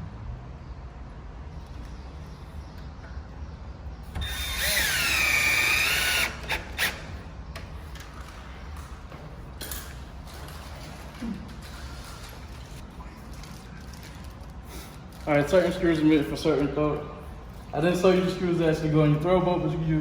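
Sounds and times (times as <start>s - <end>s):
cordless drill driving screw: 4.2s - 7.1s.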